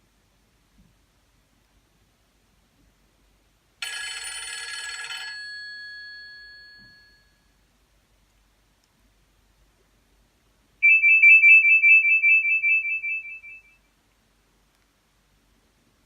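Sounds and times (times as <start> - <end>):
phone ringtone trilling: 3.8 - 7.4.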